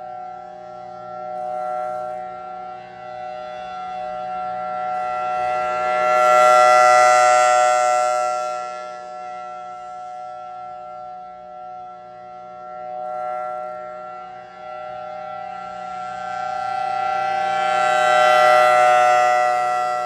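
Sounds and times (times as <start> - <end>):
civil defense siren steady tone: 0.0 - 20.0.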